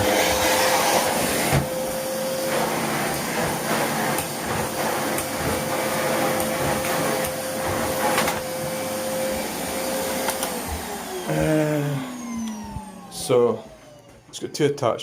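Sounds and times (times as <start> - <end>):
vacuum cleaner running: 0.0 - 14.4.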